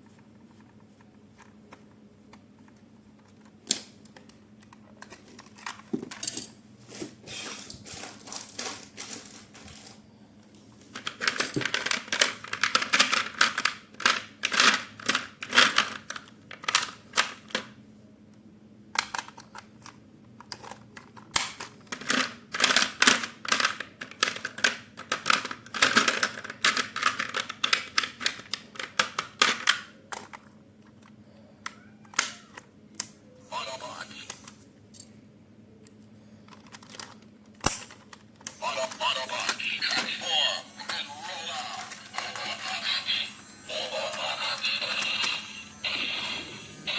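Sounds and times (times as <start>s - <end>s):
packaging clicking and crackling: 19.0s - 31.2s, 36.4s - 38.6s.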